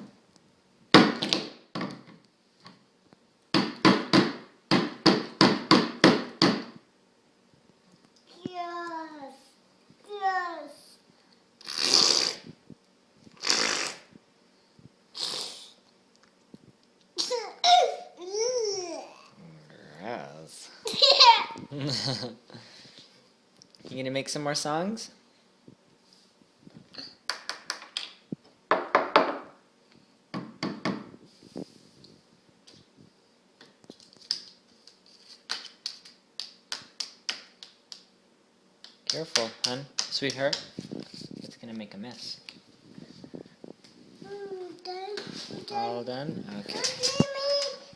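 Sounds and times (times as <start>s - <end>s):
child's high voice sounds: 8.3s - 11.0s, 21.2s - 21.7s, 44.2s - 46.0s, 46.6s - 47.9s
child blowing raspberries: 11.6s - 12.6s, 13.3s - 14.2s, 15.1s - 15.8s
child tapping object on table: 28.7s - 29.5s, 30.4s - 31.1s.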